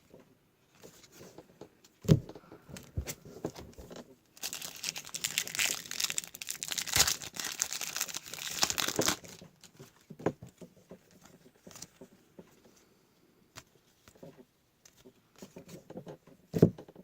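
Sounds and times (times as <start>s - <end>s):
packaging tearing and crinkling: 4.4s - 9.9s.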